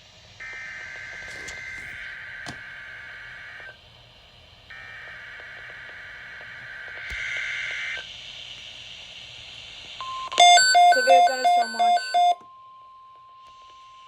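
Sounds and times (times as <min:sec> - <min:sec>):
radio static hiss: 0:00.1 - 0:10.2.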